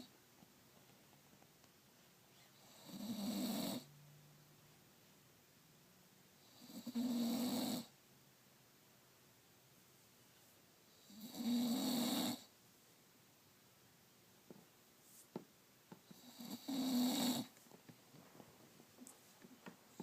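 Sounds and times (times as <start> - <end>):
dog snoring: 2.6 - 3.9, 6.4 - 7.9, 10.9 - 12.5, 16.1 - 17.5.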